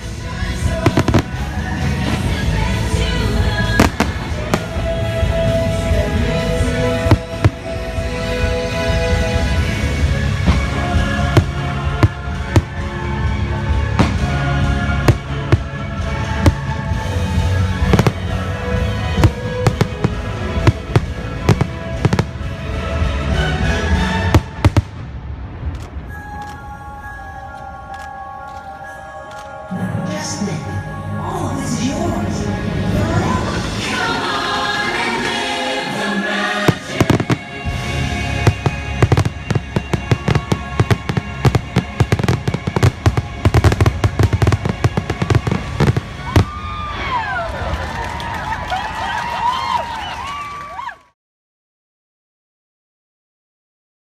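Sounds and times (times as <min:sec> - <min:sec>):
music: 0:00.0 - 0:51.0
fireworks bangs: 0:00.4 - 0:23.3, 0:23.9 - 0:26.5, 0:36.4 - 0:47.2
rapid firework bursts: 0:36.6 - 0:46.5.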